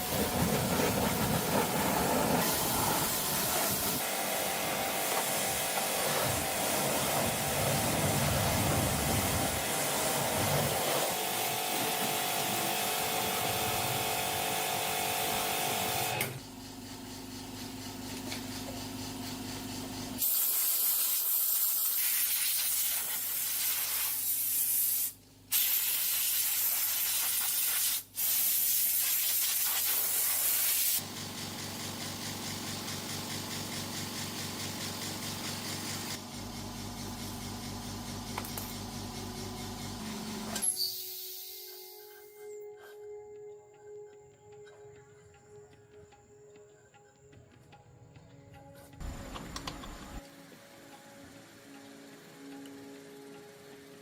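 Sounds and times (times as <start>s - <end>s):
loud spraying hiss: 0.0s - 16.2s, 20.2s - 31.1s.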